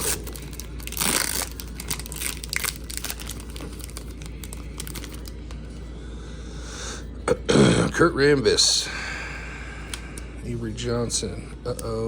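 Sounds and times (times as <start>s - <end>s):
wrapper crinkling and tearing: 0.0s - 5.5s.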